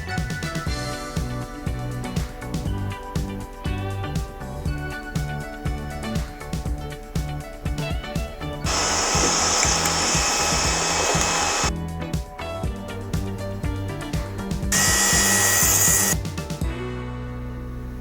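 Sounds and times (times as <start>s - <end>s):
background music: 0.0s - 18.0s
hot-air gun blowing: 8.7s - 11.7s, 14.8s - 16.2s.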